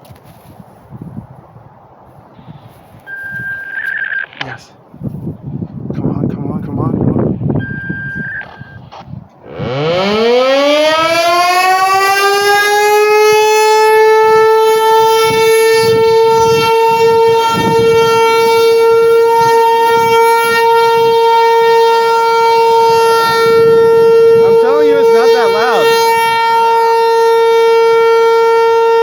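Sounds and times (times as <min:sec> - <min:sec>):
warning siren rising to steady tone: 0:07.2 - 0:29.0.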